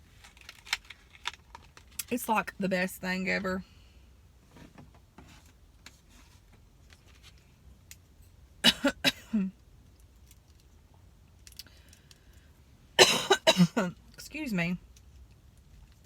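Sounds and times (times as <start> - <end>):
woman coughing: 8.6 - 9.5, 13.0 - 14.0.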